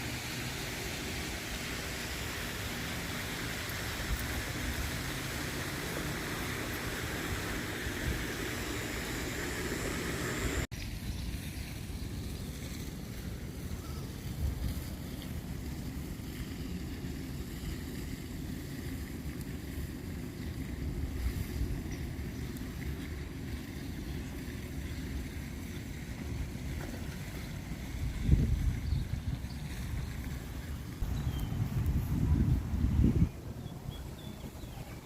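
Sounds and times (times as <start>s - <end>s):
wind buffeting microphone: 12.4s - 35.0s.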